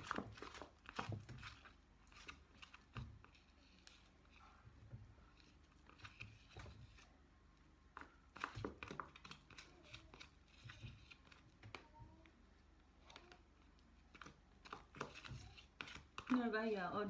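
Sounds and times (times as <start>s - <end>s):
spoon stirring in container: 0.0s - 7.2s, 7.8s - 11.8s, 13.4s - 16.5s.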